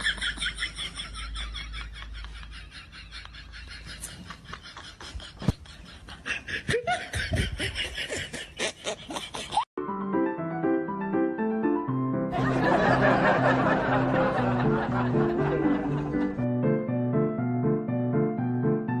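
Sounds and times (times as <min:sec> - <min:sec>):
high-pitched giggling: 0:01.1 - 0:09.7.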